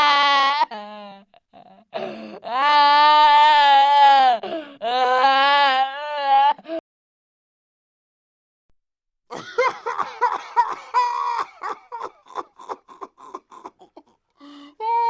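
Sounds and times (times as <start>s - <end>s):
person laughing: 9.3s - 14.1s.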